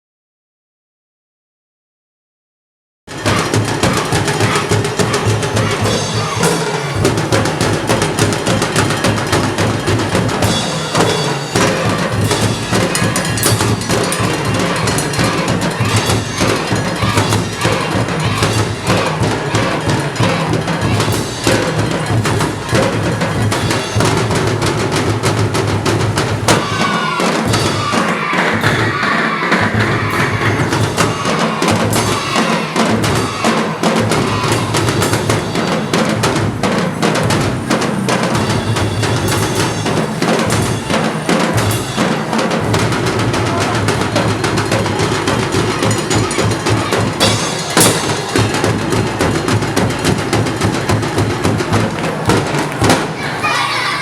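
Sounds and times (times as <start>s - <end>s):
loud dance music: 3.2s - 7.4s, 11.5s - 19.6s, 26.5s - 35.2s.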